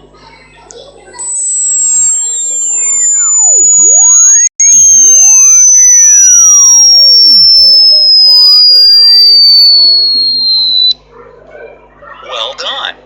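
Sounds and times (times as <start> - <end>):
descending sine tone sweep: 1.2 - 11.0.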